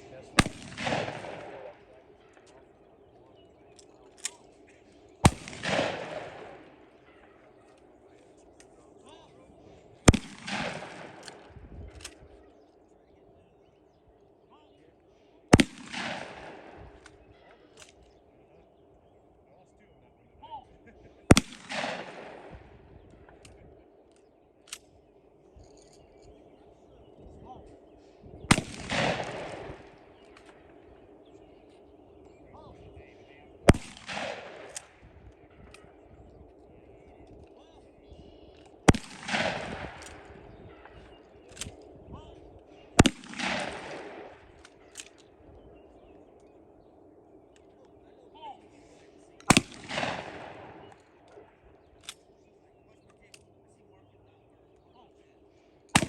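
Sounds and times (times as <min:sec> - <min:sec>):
gunshot with echo: 0:00.4 - 0:02.4, 0:05.3 - 0:07.4, 0:10.1 - 0:12.1, 0:15.6 - 0:17.1, 0:21.3 - 0:23.5, 0:28.5 - 0:30.8, 0:33.7 - 0:35.9, 0:38.9 - 0:41.7, 0:43.0 - 0:45.1, 0:49.4 - 0:51.4.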